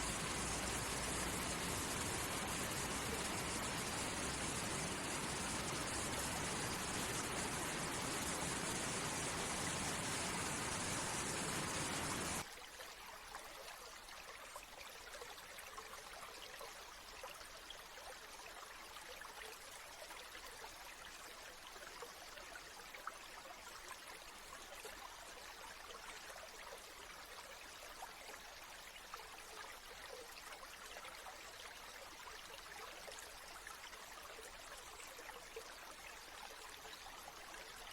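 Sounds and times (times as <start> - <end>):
rushing water hiss: 0.0 - 12.4
stream trickling with splashes: 0.0 - 37.9.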